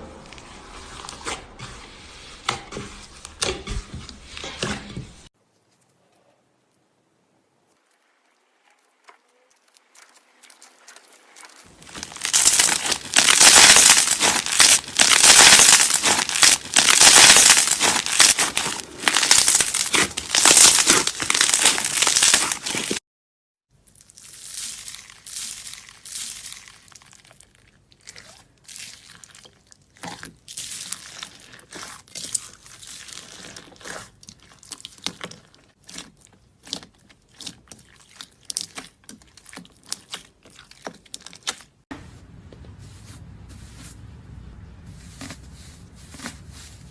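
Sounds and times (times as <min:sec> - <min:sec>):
slime squeezed by hand crackling: 0:09.3 - 0:23.0, 0:24.0 - 0:36.0.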